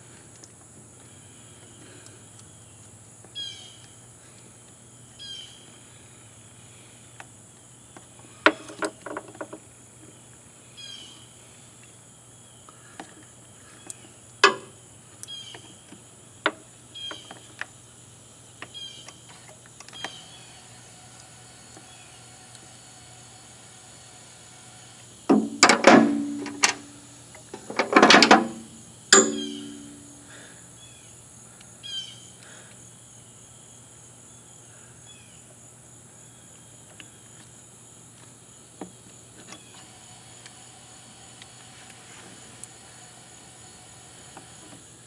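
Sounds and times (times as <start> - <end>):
insect chirps: 0.0 - 45.0
insect drone: 0.0 - 45.0
sharp clicks and knocks: 14.4 - 14.8, 25.3 - 30.1.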